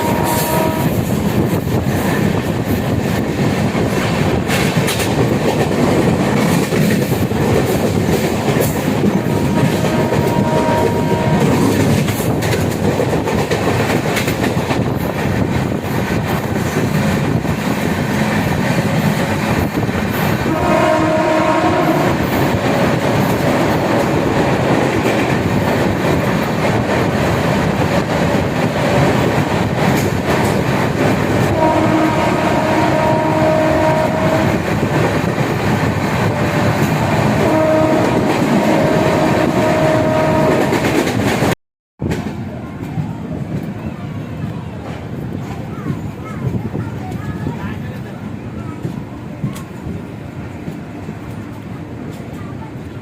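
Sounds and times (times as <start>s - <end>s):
train horn: 0.0s - 1.1s, 9.1s - 11.9s, 20.4s - 22.9s, 31.4s - 34.9s, 36.3s - 41.1s
train wheels clattering on rails: 0.0s - 53.0s.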